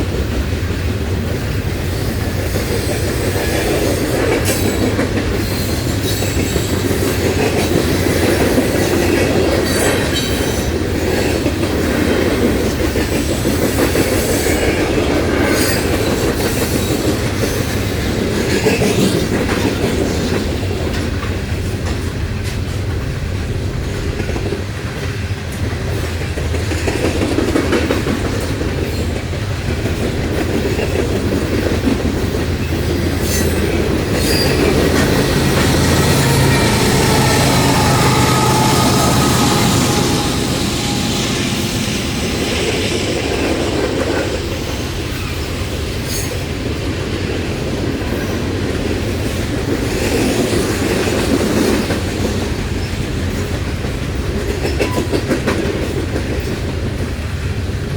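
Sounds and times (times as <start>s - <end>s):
steel wheels clacking over rail joints: 24.1s - 45.4s
wheel flanges squealing: 32.5s - 43.4s.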